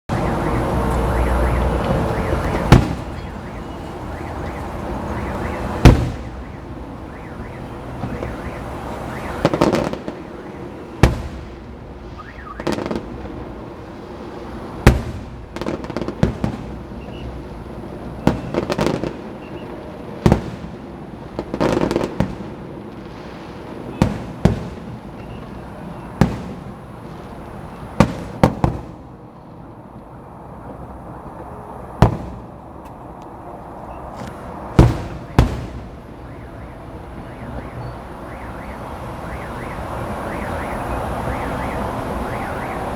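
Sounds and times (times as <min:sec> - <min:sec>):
crowd noise: 0:00.1 - 0:20.2
firework bangs: 0:00.1 - 0:33.1, 0:33.7 - 0:42.9
firework crackling: 0:00.1 - 0:42.9.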